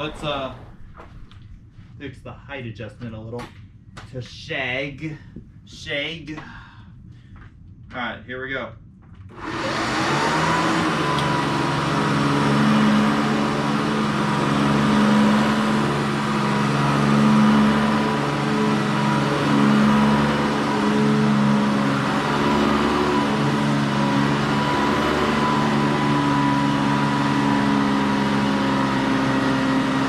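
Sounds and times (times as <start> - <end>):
upright vacuum cleaner running: 9.3 - 30.0.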